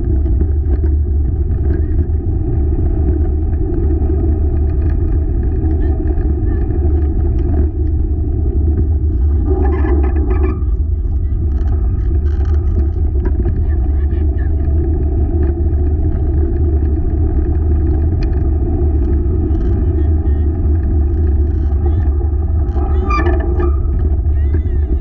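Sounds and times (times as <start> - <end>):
low rumble of rig rolling: 0.0 - 25.0
clicks and rattles: 8.8 - 13.8, 15.4 - 25.0.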